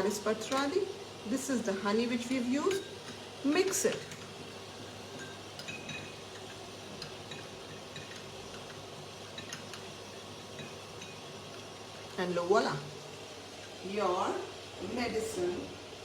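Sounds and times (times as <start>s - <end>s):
spoon clinking against bowl: 5.2s - 9.8s, 10.5s - 11.3s.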